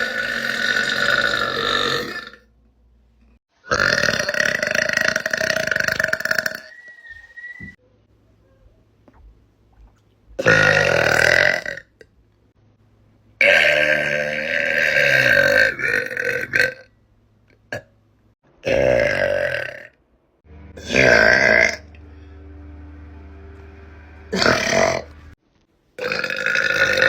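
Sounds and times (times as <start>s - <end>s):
woman burping loudly: 0.0s - 2.5s, 3.7s - 6.5s, 26.0s - 27.0s.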